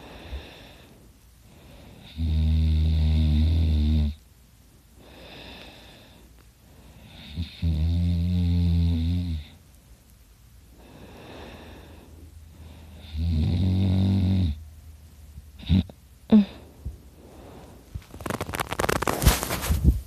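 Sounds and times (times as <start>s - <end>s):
soft breath: 0.0s - 2.2s, 5.0s - 7.3s, 10.7s - 13.2s, 16.3s - 18.5s
man snoring: 2.0s - 4.2s, 7.0s - 9.5s, 12.9s - 14.6s.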